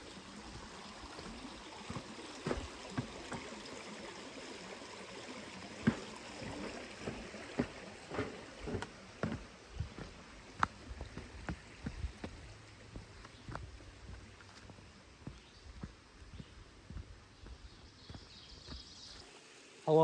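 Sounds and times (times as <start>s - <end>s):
creek rushing: 0.0s - 15.4s
short knocks and thumps: 1.2s - 3.6s, 5.8s - 13.7s.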